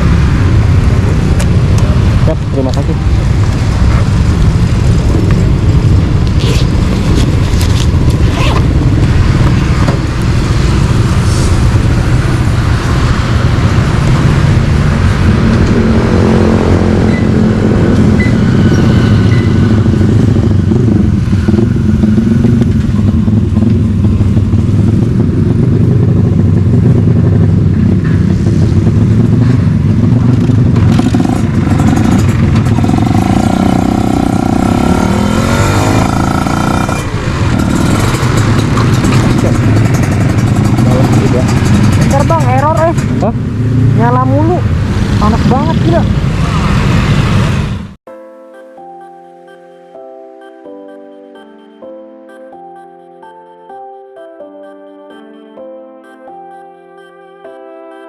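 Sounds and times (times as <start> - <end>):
motorcycle engine running: 0.0 - 46.2.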